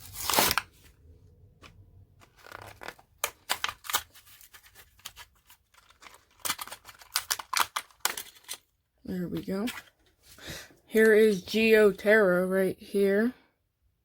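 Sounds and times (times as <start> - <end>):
package ripping open: 0.0 - 0.9, 2.2 - 8.7
crackling and scratching of packaging: 0.0 - 10.2.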